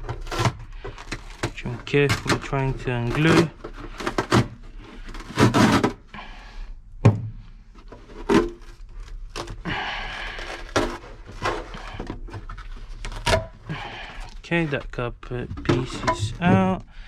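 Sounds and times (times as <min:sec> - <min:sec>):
knocks and thumps: 0:07.0 - 0:08.7, 0:15.4 - 0:17.0.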